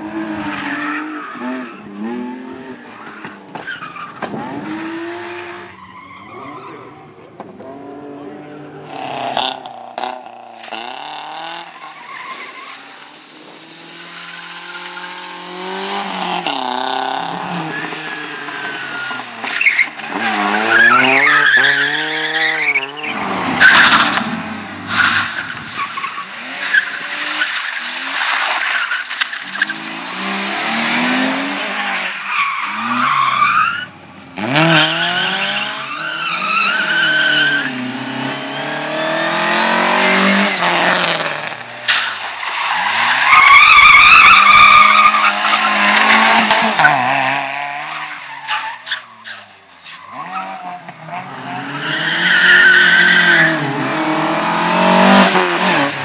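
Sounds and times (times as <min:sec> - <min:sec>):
car engine revving: 0:04.0 - 0:11.9, 0:12.9 - 0:48.3, 0:50.4 - 0:56.0
tyres squealing: 0:16.1 - 0:24.2, 0:39.9 - 0:50.8.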